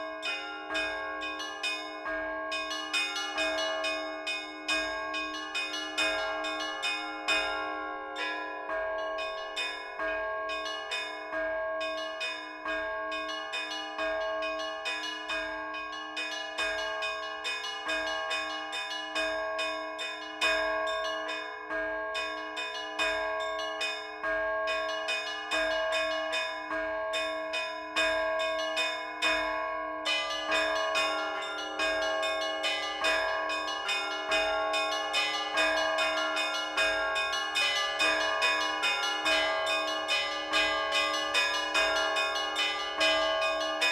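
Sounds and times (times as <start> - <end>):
church bells pealing: 0.0 - 43.9.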